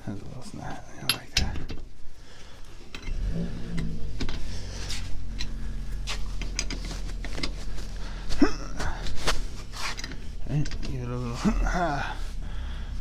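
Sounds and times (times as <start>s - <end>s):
steady low hum: 0.0s - 13.0s
lug wrench clicking and scraping: 2.8s - 7.6s, 9.7s - 11.0s.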